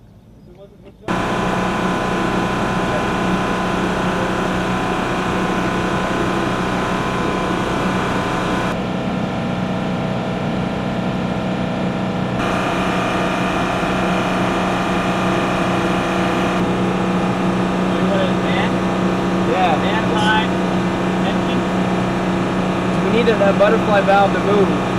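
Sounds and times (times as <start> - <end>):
machinery whining tones: 1.1 - 8.8, 12.2 - 24.9
machinery drone: 1.1 - 24.9.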